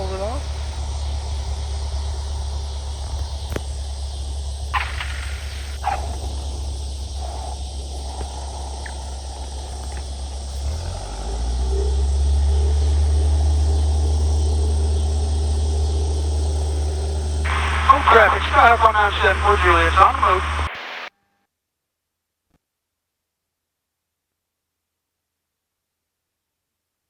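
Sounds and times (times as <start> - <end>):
wheels knocking and squeaking: 0.0 - 16.9
light aircraft engine: 0.0 - 20.7.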